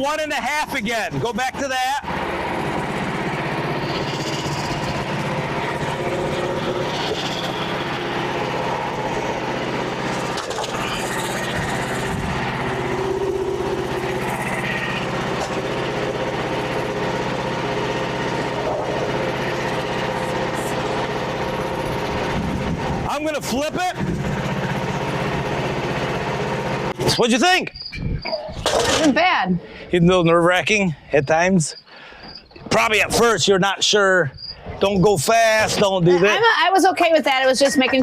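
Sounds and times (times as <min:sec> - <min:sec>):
small gasoline engine running: 0:00.5 - 0:27.4.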